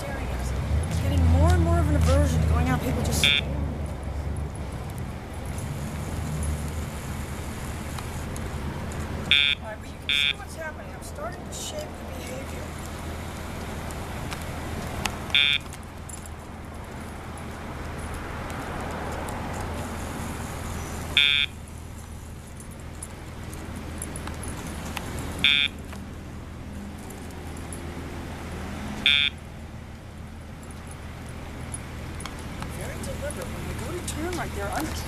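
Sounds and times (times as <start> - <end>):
short electronic buzzes: 21.1 - 21.6, 25.4 - 25.8.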